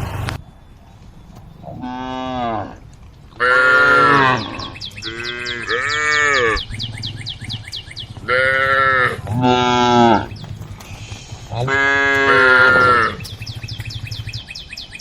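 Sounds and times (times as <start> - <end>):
cattle mooing: 1.6 - 2.8, 3.4 - 7.2, 8.1 - 10.3, 11.5 - 13.3.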